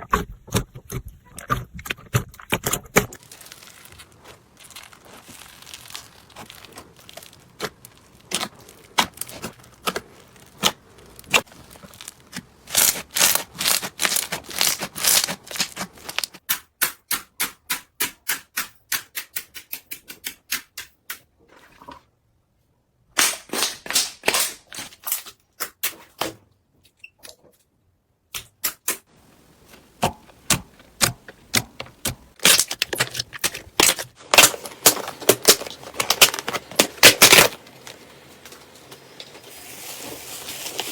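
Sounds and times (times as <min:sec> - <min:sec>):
crunchy slime crackling and popping: 0:02.9 - 0:16.4, 0:29.3 - 0:40.0.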